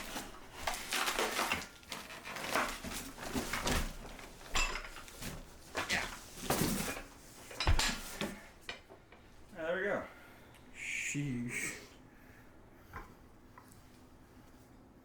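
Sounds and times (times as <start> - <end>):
cardboard rustling and scraping: 0.0 - 8.4.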